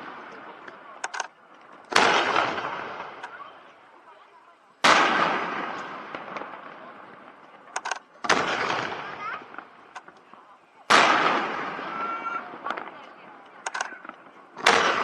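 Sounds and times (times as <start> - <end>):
firework shells booming: 0.0 - 3.8, 4.8 - 15.0
sharp firework cracks: 1.9 - 3.5, 4.8 - 7.4, 8.0 - 15.0.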